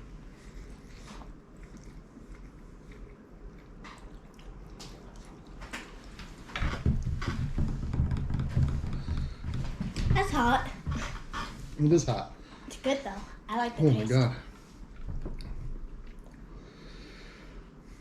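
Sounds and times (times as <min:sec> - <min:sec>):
people chewing food: 0:00.0 - 0:10.1, 0:14.5 - 0:18.0
wet mouth clicks: 0:01.5 - 0:05.5.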